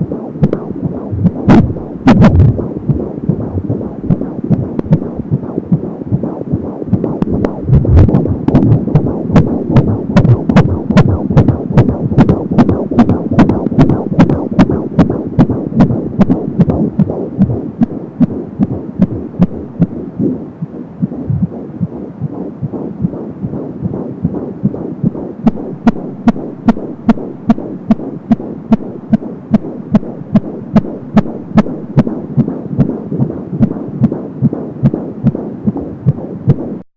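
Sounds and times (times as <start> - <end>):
fetal heartbeat on doppler: 0.0 - 36.8.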